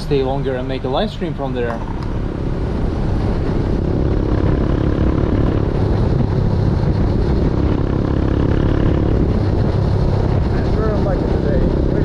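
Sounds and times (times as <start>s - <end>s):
wind rumble on microphone: 0.0s - 12.0s
motorbike engine running: 3.2s - 12.0s.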